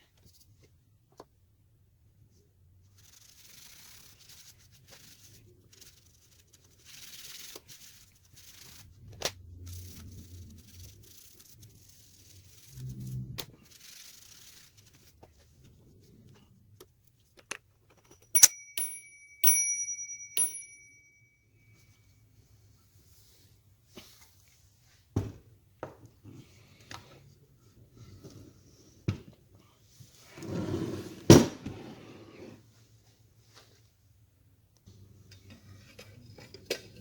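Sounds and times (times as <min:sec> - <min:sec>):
typewriter bell dinging: 0:18.1 - 0:21.4
typewriter metallic strikes: 0:18.4 - 0:20.8.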